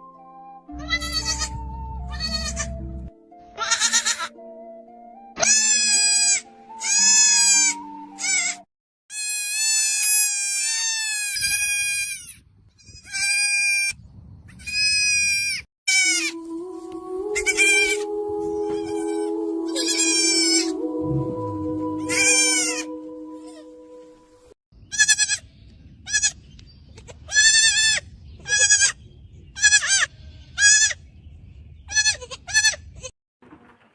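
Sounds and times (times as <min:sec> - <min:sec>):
background music with held notes: 0:00.0 - 0:08.7, 0:16.0 - 0:24.6
goat kid bleating: 0:00.8 - 0:02.7, 0:03.6 - 0:04.3, 0:05.4 - 0:13.9, 0:14.6 - 0:16.4, 0:17.4 - 0:20.7, 0:22.1 - 0:23.6, 0:24.9 - 0:25.4, 0:26.1 - 0:26.4, 0:27.0 - 0:29.0, 0:29.6 - 0:31.0, 0:31.9 - 0:33.1.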